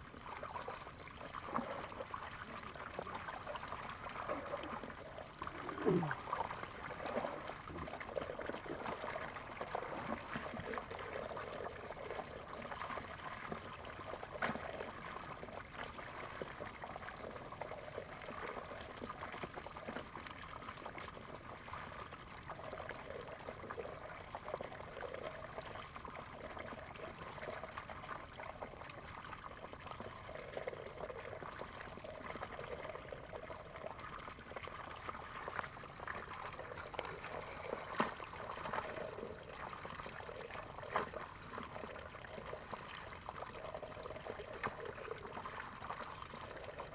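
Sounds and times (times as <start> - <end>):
small splashes and clicks: 34.5 - 39.0.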